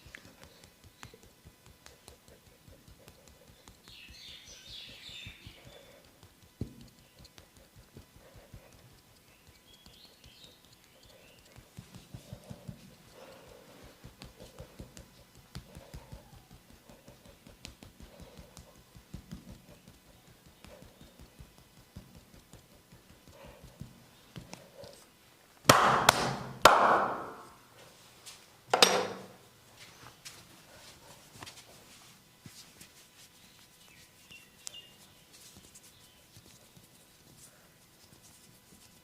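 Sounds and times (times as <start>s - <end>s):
rhythmic tapping on body: 0.0s - 25.0s, 25.7s - 27.6s, 32.3s - 39.0s
loud smacks on body: 25.7s - 27.4s.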